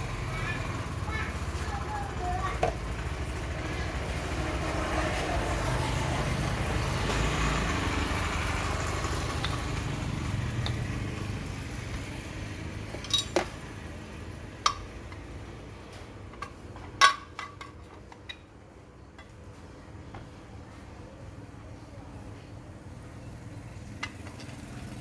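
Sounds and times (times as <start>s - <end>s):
sharp metallic clinks: 13.0s - 13.6s.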